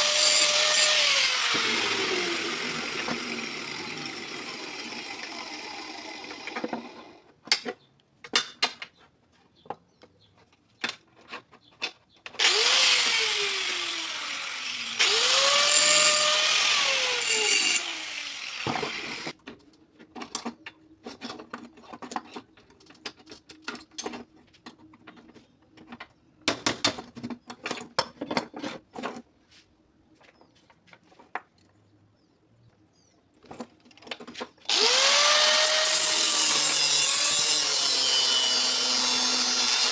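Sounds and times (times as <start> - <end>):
handheld power tool spinning: 0.0 - 7.1, 12.4 - 19.4, 34.7 - 39.9.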